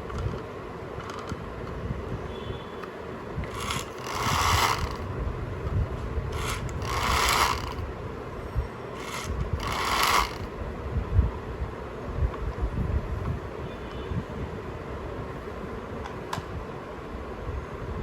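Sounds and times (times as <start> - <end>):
toy car motor whirring: 3.4 - 5.1, 6.3 - 7.9, 8.9 - 10.5.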